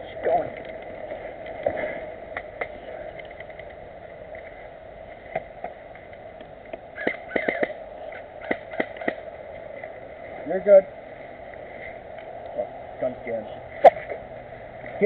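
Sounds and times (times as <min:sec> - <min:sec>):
steady background hiss: 0:00.0 - 0:15.0
airsoft guns firing: 0:07.0 - 0:07.8, 0:08.4 - 0:09.2.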